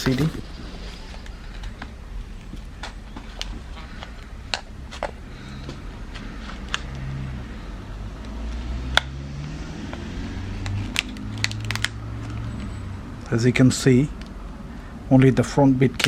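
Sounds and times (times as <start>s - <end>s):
steady low hum: 0.0s - 8.8s.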